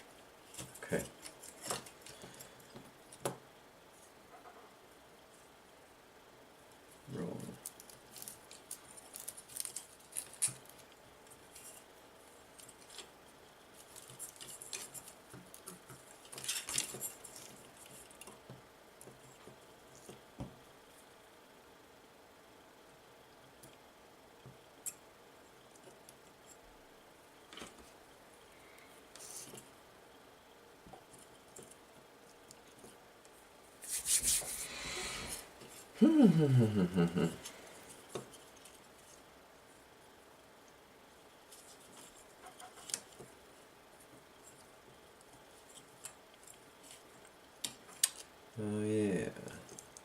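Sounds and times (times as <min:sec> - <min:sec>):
small parts clicking and rattling: 0:07.5 - 0:11.9, 0:13.8 - 0:20.1
rubbing and scraping: 0:33.8 - 0:35.9.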